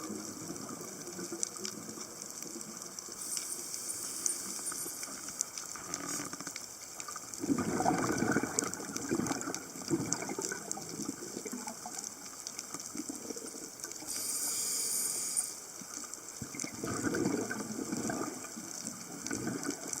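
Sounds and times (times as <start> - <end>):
water gushing and bubbling: 0.0 - 20.0
high hiss: 3.2 - 6.3, 14.0 - 15.8.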